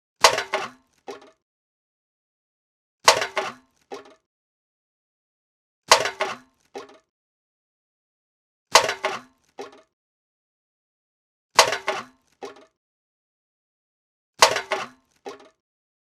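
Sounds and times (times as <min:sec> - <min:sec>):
can clattering and bouncing: 0:14.4 - 0:15.6.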